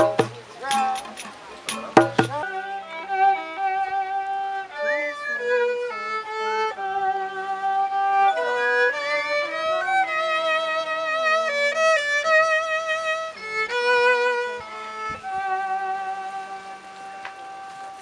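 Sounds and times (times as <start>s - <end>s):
violin melody with vibrato: 0.0s - 18.0s.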